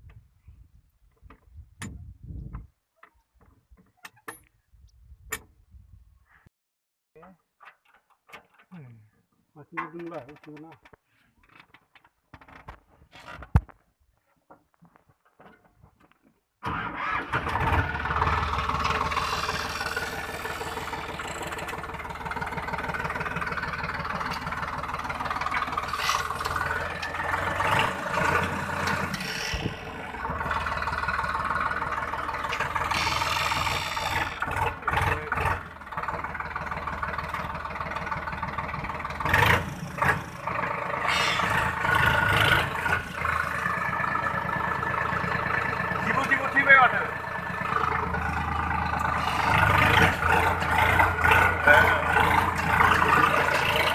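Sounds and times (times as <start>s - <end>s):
tractor engine running: 15.6s - 53.9s.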